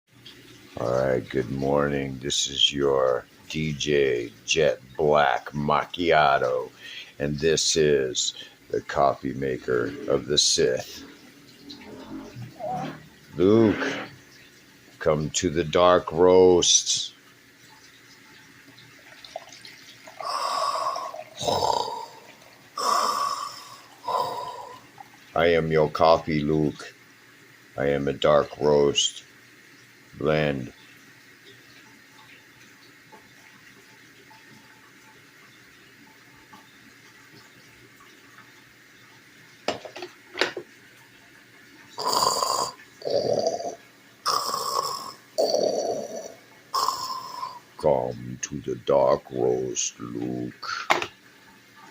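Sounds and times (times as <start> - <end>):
coffee maker gurgling and hissing: 0.1 - 51.9
coffee maker hiss and gurgle: 5.1 - 14.2, 18.9 - 27.0, 42.0 - 48.0, 48.8 - 51.1
coffee maker gurgling pops: 50.6 - 51.2.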